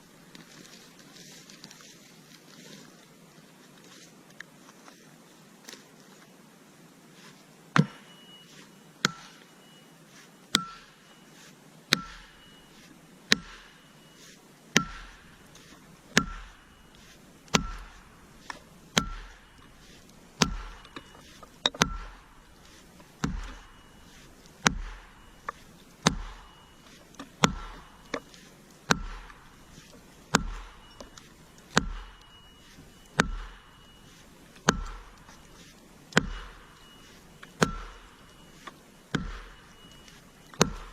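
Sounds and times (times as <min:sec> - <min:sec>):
heavy tool striking with ringing: 0:07.8 - 0:09.9, 0:10.5 - 0:40.9.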